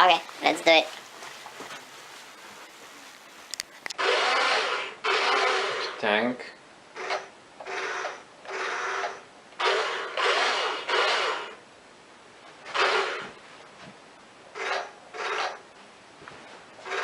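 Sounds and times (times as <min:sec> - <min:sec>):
small electric motor whirring: 0:04.0 - 0:05.9.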